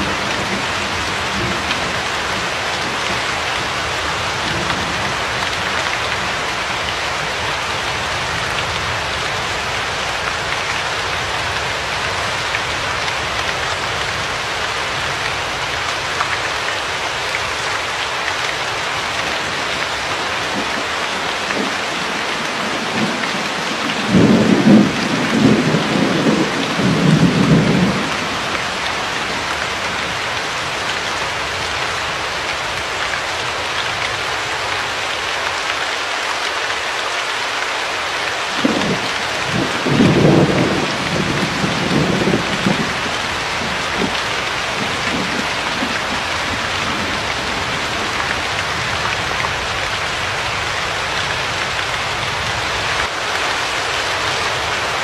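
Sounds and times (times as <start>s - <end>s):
thunder rumbling: 0.0s - 6.5s, 19.2s - 30.2s, 38.6s - 50.7s
heavy rain hissing: 0.0s - 55.0s.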